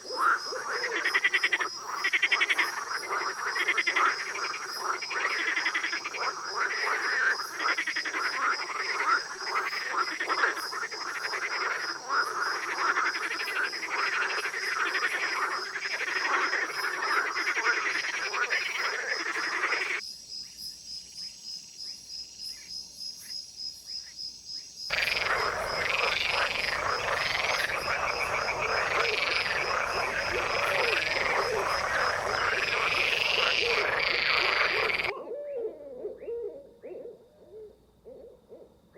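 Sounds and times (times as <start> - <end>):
frogs croaking in chorus: 0.0 - 20.0, 23.9 - 38.9
pulsed frog calls: 24.9 - 35.2.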